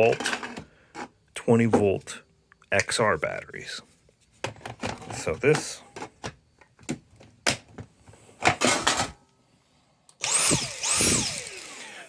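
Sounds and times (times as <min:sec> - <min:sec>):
handheld vacuum motor whine: 0:10.2 - 0:12.0.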